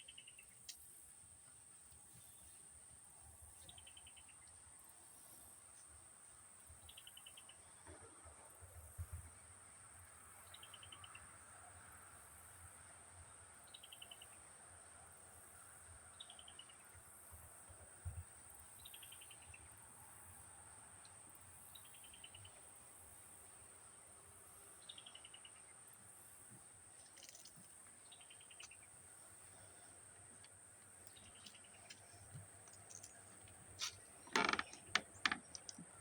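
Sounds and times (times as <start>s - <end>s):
insect chorus drone: 8.6s - 36.0s.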